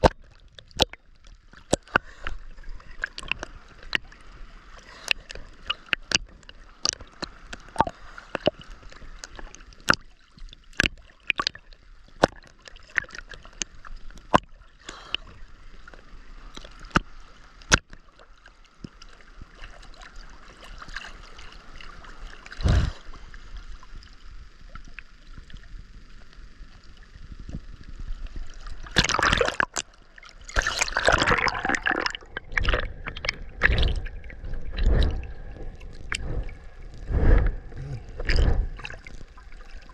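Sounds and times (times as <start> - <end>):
seawater sloshing and gurgling: 0.0 - 15.8, 28.2 - 39.9
heavy water splashing: 28.8 - 39.9.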